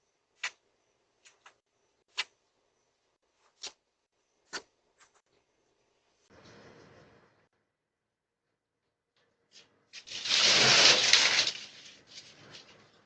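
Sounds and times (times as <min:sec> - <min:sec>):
rustling noise: 0:10.0 - 0:13.0.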